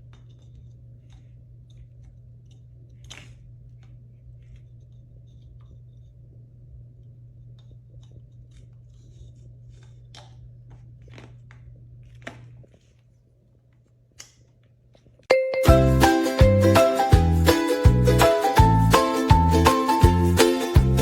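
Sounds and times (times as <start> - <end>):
low steady hum: 0.0 - 21.0
loud children's music: 15.6 - 21.0.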